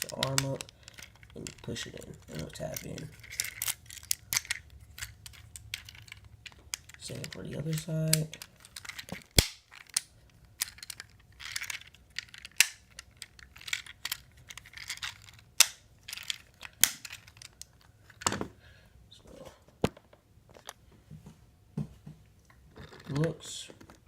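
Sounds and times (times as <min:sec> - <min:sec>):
soft handling and rustling: 0:00.0 - 0:24.0.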